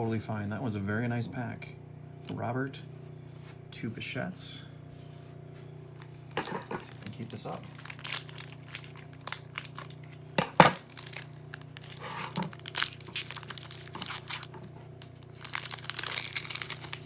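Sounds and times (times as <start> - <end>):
foil wrapper crinkling and tearing: 6.0 - 17.0.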